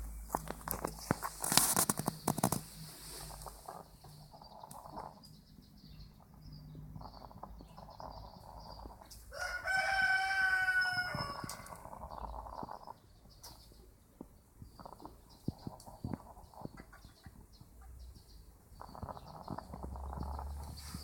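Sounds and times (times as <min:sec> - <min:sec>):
rooster crowing: 0:09.3 - 0:11.9.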